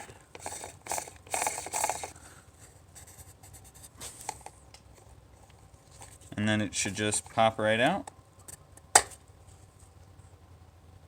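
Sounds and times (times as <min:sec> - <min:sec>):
scraping and rustling: 0:00.0 - 0:07.4.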